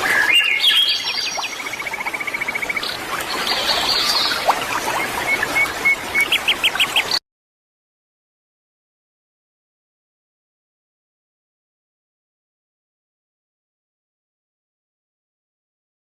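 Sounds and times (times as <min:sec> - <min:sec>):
birds singing and chirping: 0:00.0 - 0:07.2.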